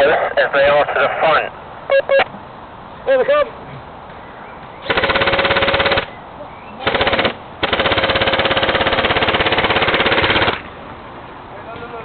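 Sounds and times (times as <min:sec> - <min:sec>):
airsoft rifle firing full auto: 0:04.8 - 0:06.1, 0:06.8 - 0:10.6.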